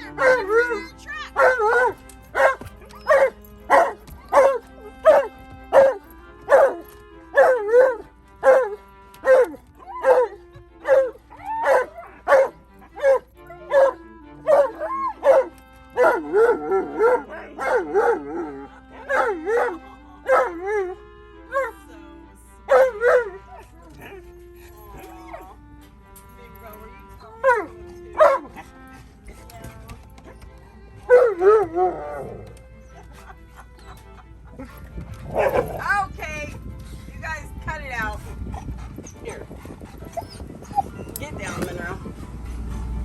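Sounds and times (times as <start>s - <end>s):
dog barking and howling: 0.0s - 21.8s, 22.7s - 24.3s, 27.4s - 28.8s, 31.1s - 33.4s, 35.3s - 35.9s
background music: 0.0s - 43.0s.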